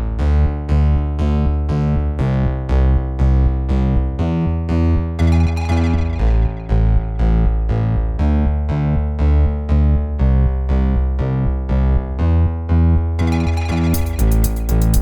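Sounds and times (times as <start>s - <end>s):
bass line: 0.0s - 15.0s
synthesizer and electric piano notes: 5.1s - 7.6s, 13.2s - 15.0s
quick high percussion beat: 13.3s - 15.0s.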